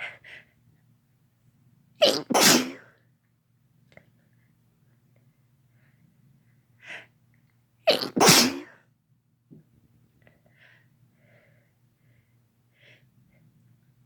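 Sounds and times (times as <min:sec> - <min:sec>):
person sneezing: 0:02.0 - 0:02.9, 0:07.9 - 0:08.8.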